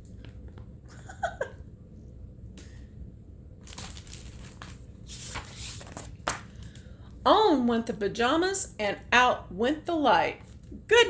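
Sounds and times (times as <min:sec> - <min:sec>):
paper pages rustling and crinkling: 0:03.6 - 0:06.7.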